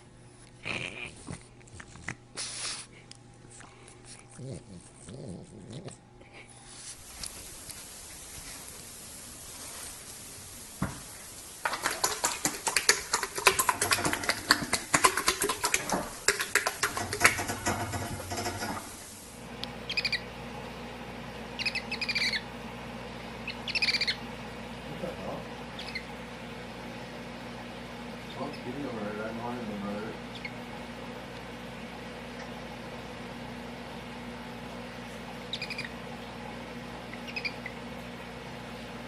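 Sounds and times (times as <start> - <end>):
bird chattering: 19.9 - 20.2, 21.6 - 22.5, 23.4 - 24.2, 25.7 - 26.1, 35.5 - 36.0, 37.1 - 37.8.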